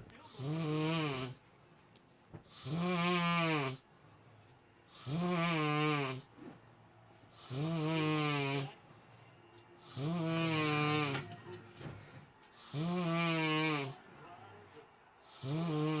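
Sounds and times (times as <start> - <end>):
person snoring: 0.3 - 1.4, 2.5 - 3.8, 4.9 - 6.3, 7.4 - 8.8, 9.8 - 11.2, 12.6 - 14.0, 15.4 - 16.0.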